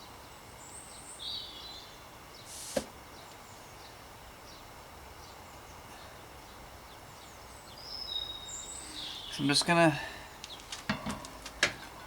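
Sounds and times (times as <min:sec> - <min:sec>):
quick swish: 0:02.5 - 0:02.9
bird chirps: 0:03.1 - 0:09.6.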